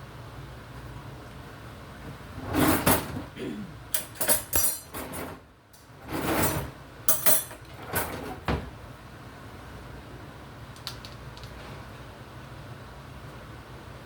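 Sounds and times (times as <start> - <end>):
household clatters and knocks: 2.4 - 3.3, 6.0 - 8.7.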